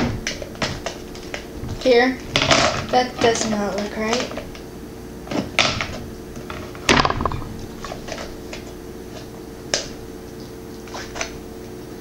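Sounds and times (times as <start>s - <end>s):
plastic parts knocking and clicking: 6.8s - 7.6s.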